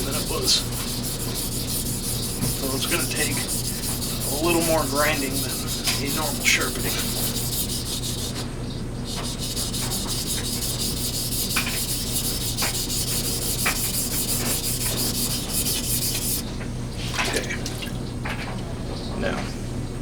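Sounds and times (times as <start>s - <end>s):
knife scraping on whetstone: 0.0s - 8.5s, 9.1s - 16.4s.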